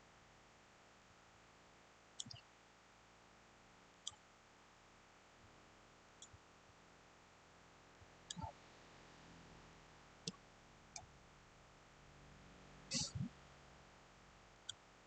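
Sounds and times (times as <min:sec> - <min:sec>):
faint steady hiss: 0:00.0 - 0:15.0
computer mouse clicks: 0:02.2 - 0:02.5, 0:08.3 - 0:08.6.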